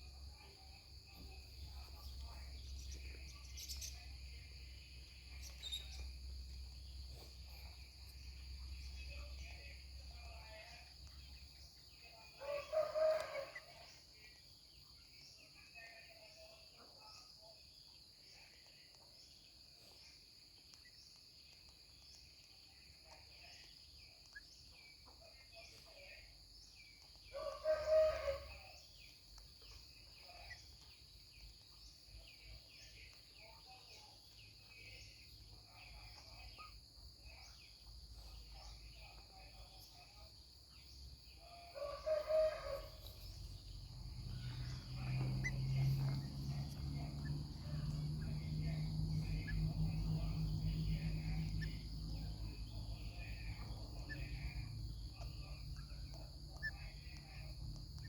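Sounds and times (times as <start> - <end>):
faint high-pitched hum: 0.0 - 17.5
bird calling: 41.8 - 58.0.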